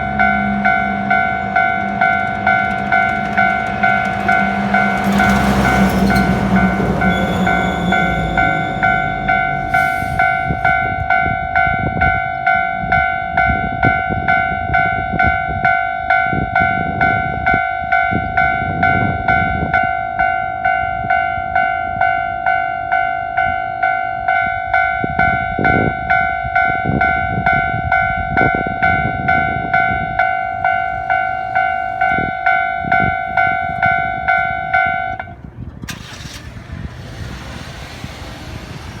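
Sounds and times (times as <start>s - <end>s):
rush of noise: 0.0s - 11.6s
heavy trucks rumbling past: 0.0s - 15.6s, 24.8s - 39.0s
level-crossing warning bell: 0.0s - 36.5s.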